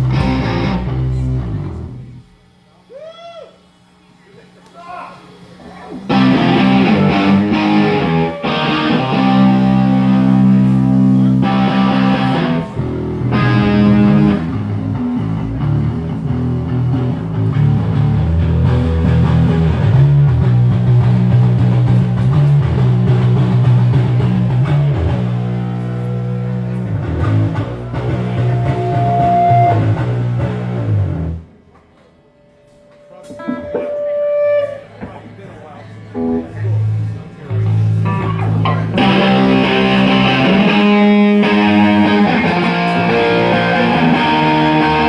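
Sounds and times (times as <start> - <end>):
bass guitar: 0.0 - 2.4, 6.1 - 31.5, 37.5 - 45.0
distorted electric guitar: 0.0 - 2.4, 5.9 - 31.5, 33.2 - 35.1, 36.1 - 45.0.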